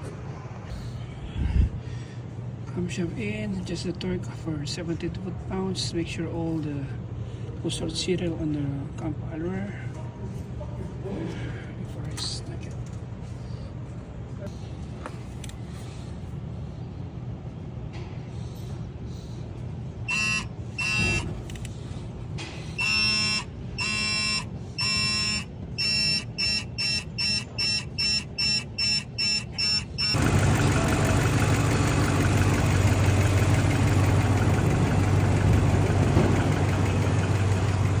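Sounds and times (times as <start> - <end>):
electronic warning chimes: 20.1 - 21.3, 22.8 - 30.2
quick beeps: 20.1 - 21.3, 22.8 - 30.2
engine starting and idling: 29.6 - 38.0.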